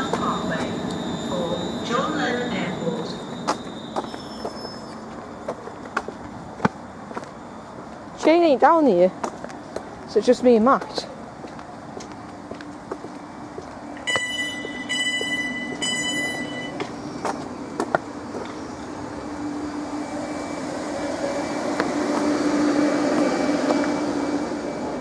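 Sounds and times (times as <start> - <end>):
train door warning beeps: 0.0 - 5.6, 14.0 - 17.0
electric train motor hum: 0.0 - 10.1, 11.2 - 25.0.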